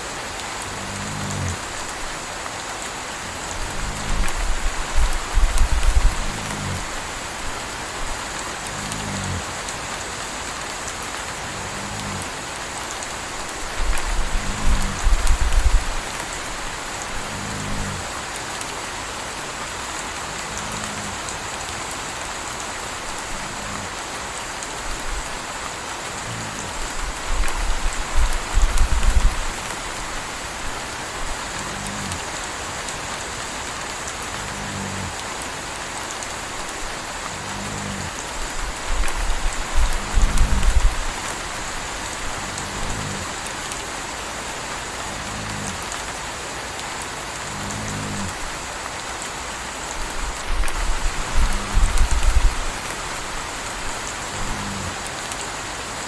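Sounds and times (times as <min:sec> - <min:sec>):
steady rain: 0:00.0 - 0:56.0
puppy snoring: 0:00.7 - 0:02.0, 0:03.5 - 0:07.5, 0:08.6 - 0:09.4, 0:11.5 - 0:12.4, 0:13.8 - 0:18.1, 0:23.2 - 0:24.0, 0:31.2 - 0:32.2, 0:34.3 - 0:35.2, 0:36.6 - 0:43.4, 0:45.0 - 0:45.8, 0:47.4 - 0:48.4, 0:50.0 - 0:55.1.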